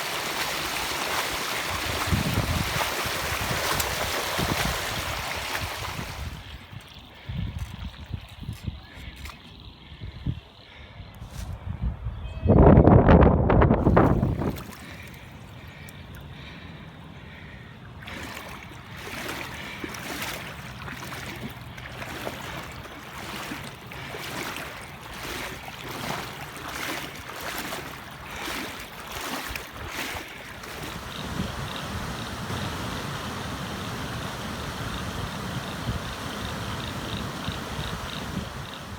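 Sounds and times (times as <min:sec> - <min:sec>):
creek water rushing: 0:00.0 - 0:06.6, 0:17.3 - 0:38.9.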